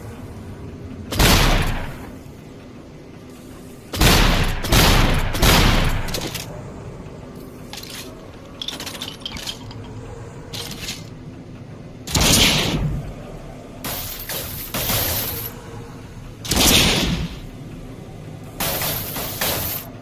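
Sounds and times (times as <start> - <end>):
shotgun shots with echo: 1.1 - 2.0.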